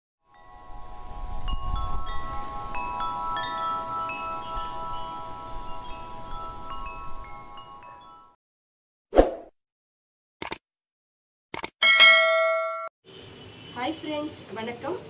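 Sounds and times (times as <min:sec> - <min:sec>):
tinkling chimes: 0:00.3 - 0:08.4.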